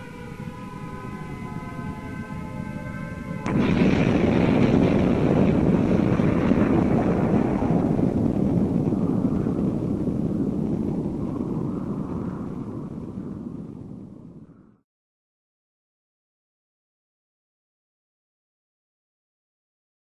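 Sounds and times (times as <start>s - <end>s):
loud rough rumble: 3.1s - 14.4s
sharp crack: 3.4s - 10.2s.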